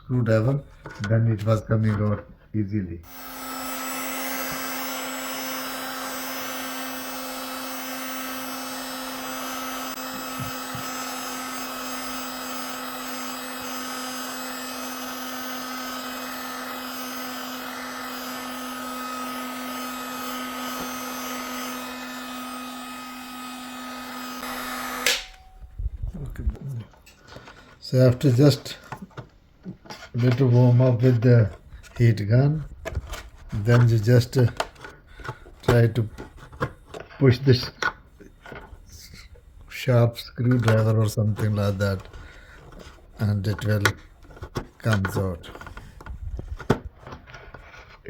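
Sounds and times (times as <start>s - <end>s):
heat gun blowing: 3.0s - 25.9s.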